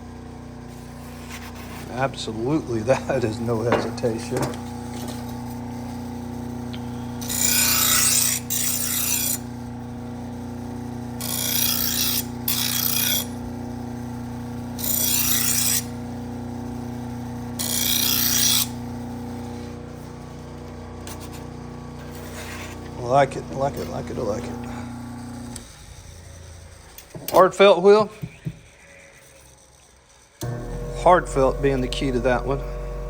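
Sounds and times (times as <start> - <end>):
sharpening machine humming: 0.0 - 33.0
knife blade strokes on sharpener: 7.2 - 9.4, 14.8 - 15.9, 17.6 - 18.7.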